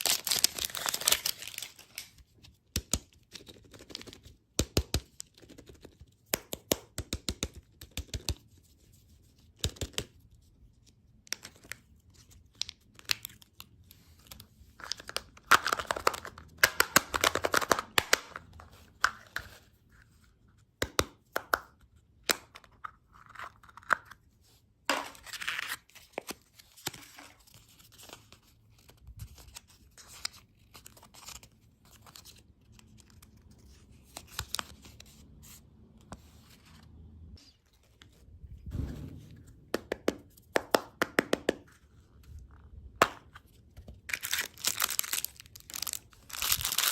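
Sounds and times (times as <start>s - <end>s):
packaging torn and crinkled: 0.0s - 2.2s, 44.1s - 46.9s.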